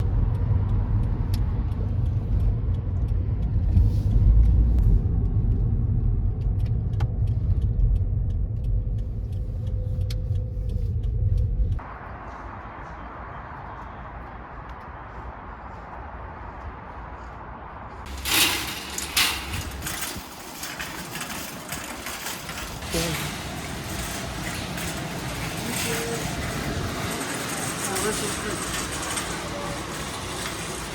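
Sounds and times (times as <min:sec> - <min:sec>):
small clicks and ticks: 0:00.0 - 0:11.8
car road rumble: 0:00.0 - 0:30.9.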